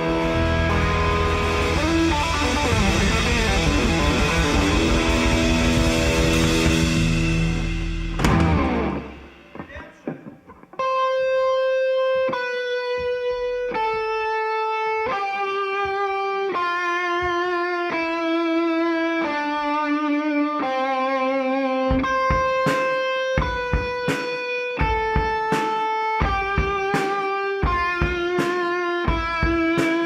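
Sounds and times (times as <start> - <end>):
drums and bass beat: 0.0 - 10.6, 15.0 - 18.1, 21.8 - 30.0
electric guitar sustained notes: 0.0 - 30.0.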